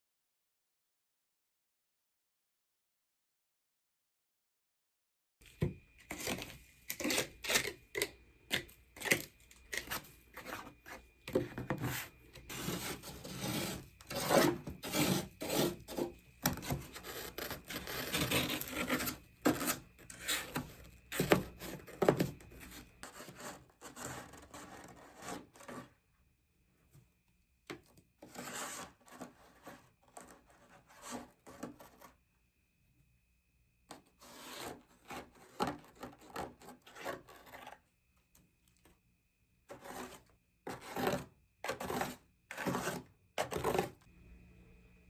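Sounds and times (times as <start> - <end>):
frost being scraped: 6.1 - 25.9.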